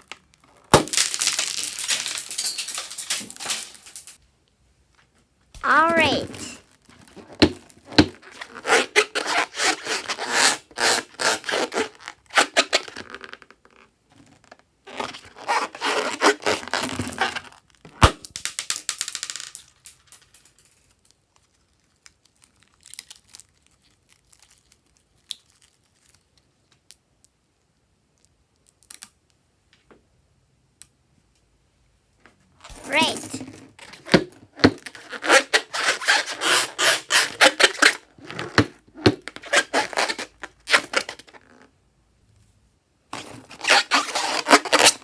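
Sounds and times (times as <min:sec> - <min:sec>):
slime crackling and crinkling: 0:00.0 - 0:04.2, 0:21.4 - 0:26.5.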